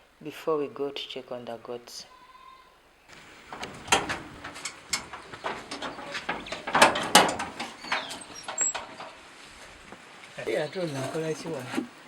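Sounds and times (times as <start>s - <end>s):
falling bird call: 2.2s - 11.0s
objects being handled: 3.1s - 12.0s
door knocks and rattles: 3.4s - 9.3s.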